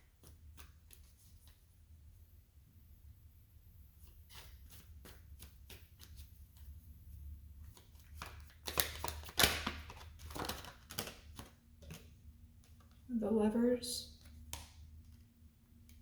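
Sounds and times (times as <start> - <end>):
cards being shuffled: 0.0 - 1.6, 4.0 - 6.8, 7.6 - 13.0.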